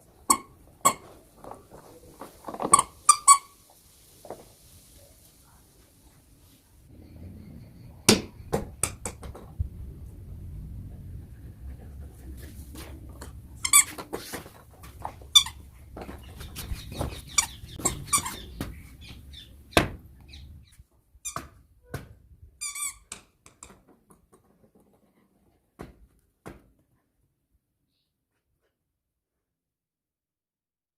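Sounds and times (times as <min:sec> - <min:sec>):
squeaky toy squeaking: 0:00.3 - 0:01.0, 0:02.7 - 0:03.6, 0:13.6 - 0:14.0, 0:17.2 - 0:18.5, 0:22.6 - 0:23.2
toy ball knocking and thudding: 0:08.1 - 0:09.5.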